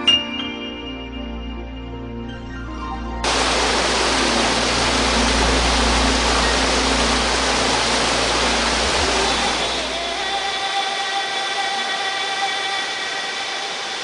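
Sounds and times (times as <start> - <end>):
background music: 0.0 - 14.0
waterfall rushing: 3.2 - 14.0.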